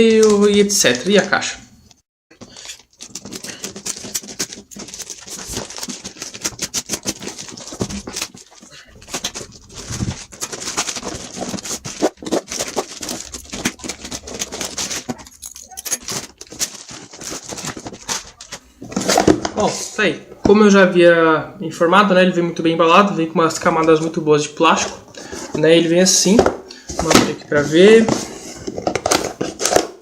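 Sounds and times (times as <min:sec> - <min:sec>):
plastic wrap tearing and crinkling: 0:02.4 - 0:19.3.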